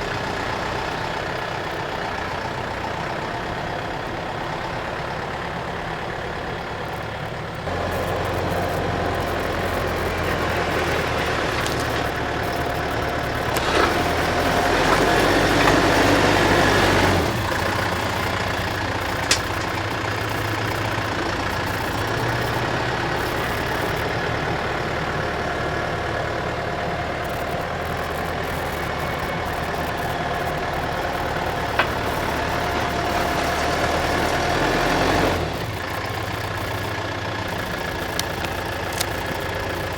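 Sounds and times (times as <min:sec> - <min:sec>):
skid-steer loader engine running: 0:00.0 - 0:39.9
bucket digging: 0:09.5 - 0:20.4.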